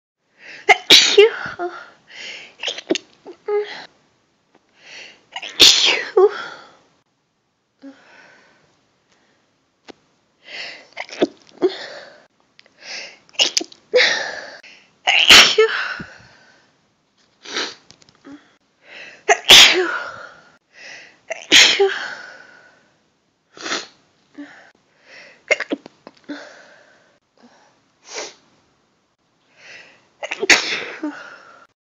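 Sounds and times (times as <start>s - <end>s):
woman sneezing: 0.7s - 1.8s, 5.4s - 6.5s, 13.4s - 14.3s, 15.1s - 16.0s, 19.3s - 20.2s, 21.3s - 22.2s, 30.2s - 31.3s.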